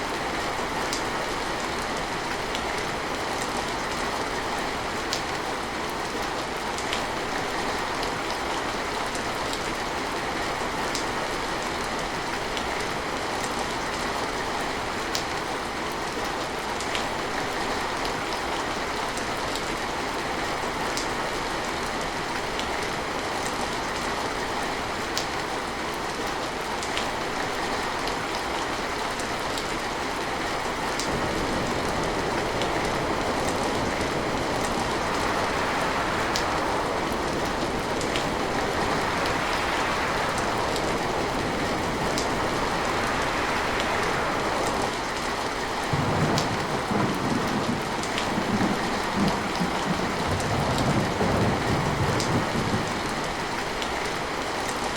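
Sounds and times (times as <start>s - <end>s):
steady rain: 0.0s - 54.9s
thunder rumble: 30.6s - 54.1s.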